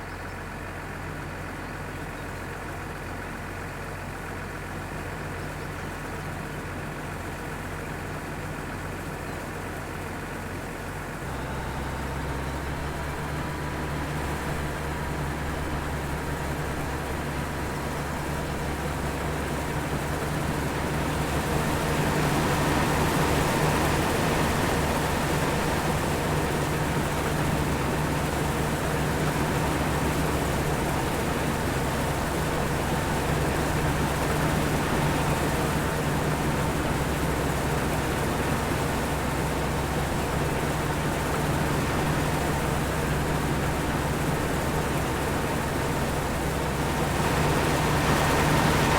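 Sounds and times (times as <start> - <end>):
machine engine humming: 11.2 - 48.9.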